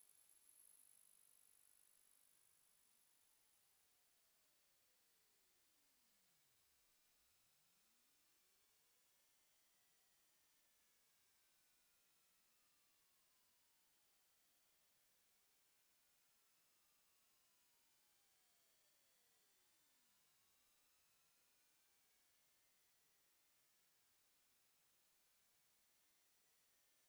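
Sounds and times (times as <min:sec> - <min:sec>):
high-pitched rising test tone: 0:02.2 - 0:16.9.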